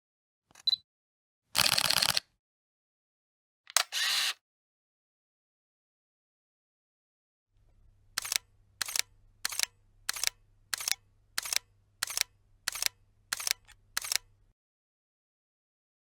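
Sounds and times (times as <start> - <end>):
camera shutter clicks: 1.6 - 2.2, 3.7 - 4.4, 8.2 - 14.3.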